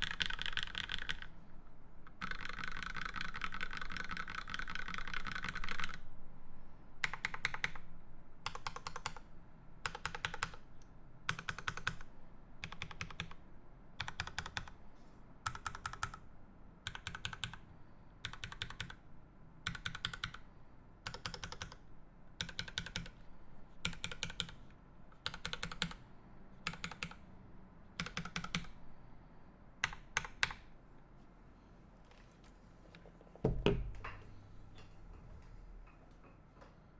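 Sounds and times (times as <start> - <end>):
mechanical keyboard typing: 0.0 - 1.3, 2.1 - 6.0, 7.0 - 9.2, 9.9 - 10.6, 11.3 - 13.4, 14.0 - 14.8, 15.4 - 16.2, 16.8 - 17.6, 18.2 - 19.0, 19.6 - 20.4, 21.1 - 21.8, 22.4 - 23.2, 23.8 - 26.0, 26.6 - 27.2, 28.0 - 28.8, 29.8 - 30.7.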